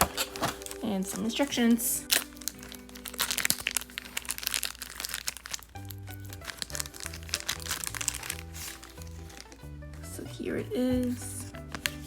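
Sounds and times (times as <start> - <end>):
packaging crinkling and rustling: 0.0 - 10.2, 11.0 - 12.0
background music: 0.0 - 12.0.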